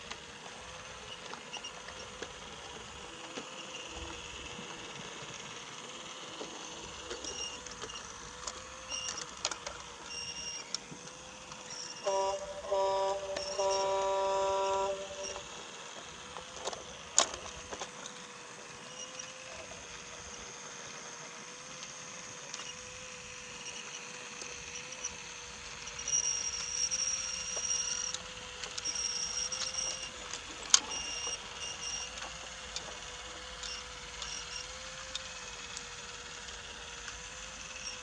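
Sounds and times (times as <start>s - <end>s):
toy train motor hum: 0.0s - 38.0s
high-pitched whine: 11.7s - 15.7s
electronic horn tone: 12.0s - 15.6s.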